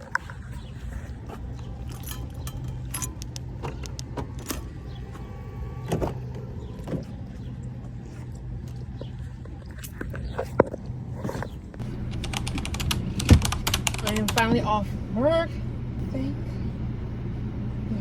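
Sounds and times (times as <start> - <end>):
car hum: 0.0 - 18.0
keys jangling: 1.6 - 4.6.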